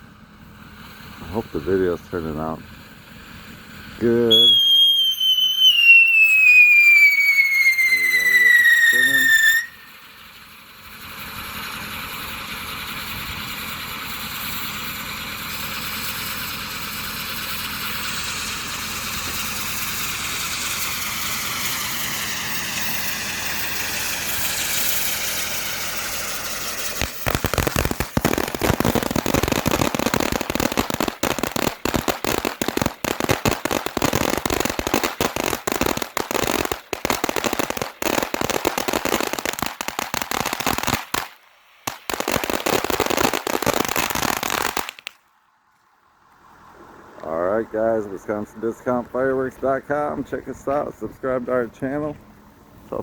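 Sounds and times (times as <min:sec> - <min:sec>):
firework crackling: 0:00.0 - 0:45.4
firework hissing and whistling: 0:00.5 - 0:45.2.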